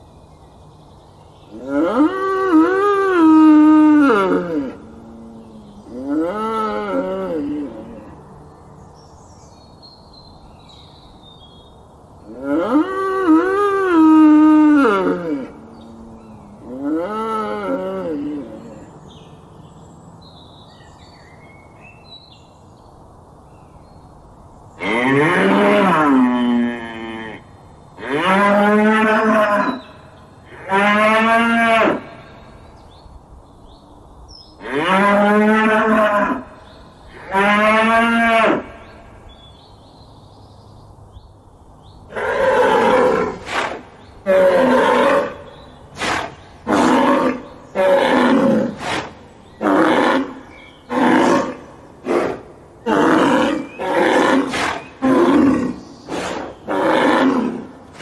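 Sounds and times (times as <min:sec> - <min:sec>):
bull mooing: 0:12.3 - 0:18.8.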